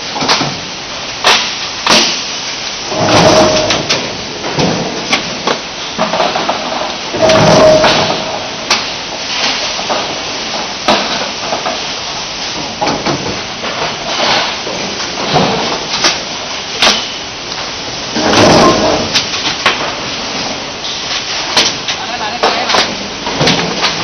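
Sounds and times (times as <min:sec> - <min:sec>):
production line machinery running: 0:00.0 - 0:24.0
sharp metal knocks and clanks: 0:16.8 - 0:17.2.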